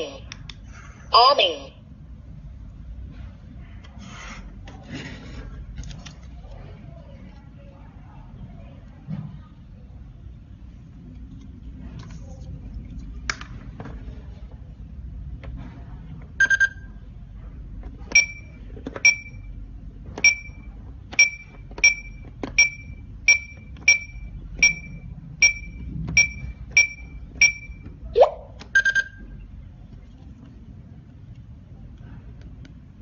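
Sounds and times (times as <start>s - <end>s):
lower triple beep: 21.2s - 27.8s, 28.8s - 29.3s.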